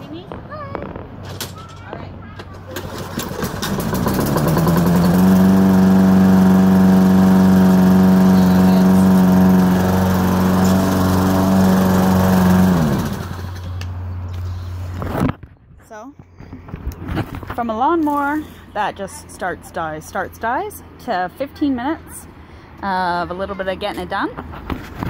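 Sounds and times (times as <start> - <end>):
lawn mower engine running: 2.6 - 14.3.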